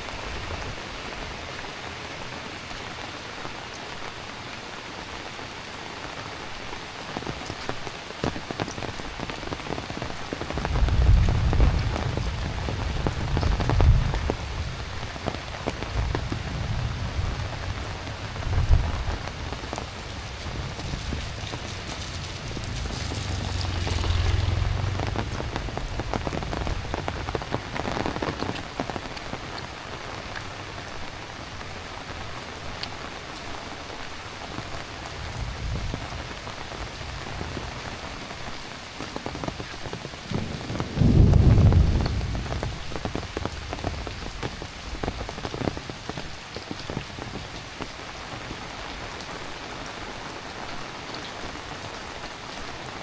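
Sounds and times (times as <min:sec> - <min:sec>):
heavy rain falling: 0:00.0 - 0:53.0
thunder rumbling: 0:10.4 - 0:32.0, 0:40.3 - 0:45.8.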